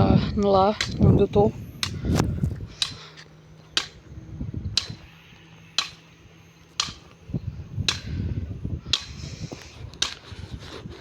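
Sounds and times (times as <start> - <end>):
metal tool chopping wood: 5.8 - 6.0.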